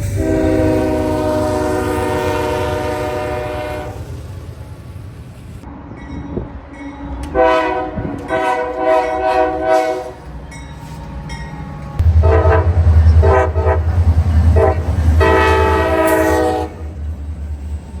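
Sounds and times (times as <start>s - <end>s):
train air horn blasts: 0.0s - 4.2s, 7.3s - 10.2s, 11.9s - 17.0s
train heavy rumble: 0.0s - 18.0s.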